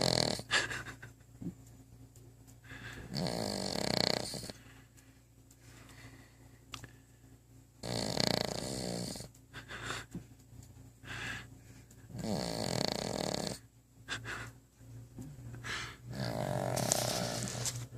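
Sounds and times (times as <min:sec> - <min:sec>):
dog snoring: 0:00.0 - 0:00.5, 0:03.0 - 0:04.6, 0:07.8 - 0:09.3, 0:12.1 - 0:13.7, 0:16.1 - 0:17.6.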